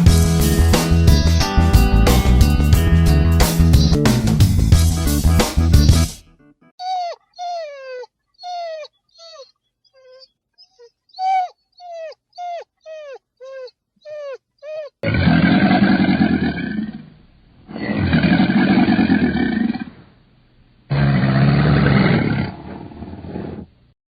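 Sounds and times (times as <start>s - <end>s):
kitten mewing: 6.8s - 15.0s
rough animal roar: 11.2s - 20.0s, 20.9s - 23.7s.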